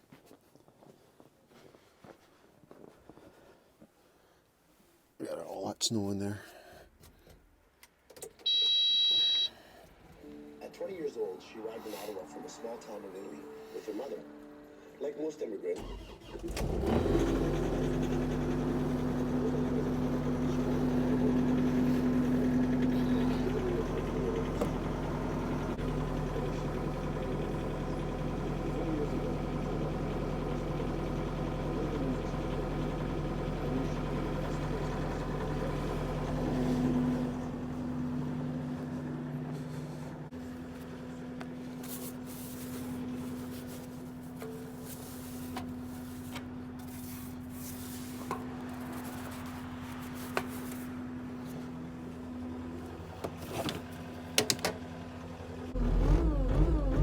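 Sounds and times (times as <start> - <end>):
diesel engine idling: 15.8 - 53.2, 53.9 - 57.0.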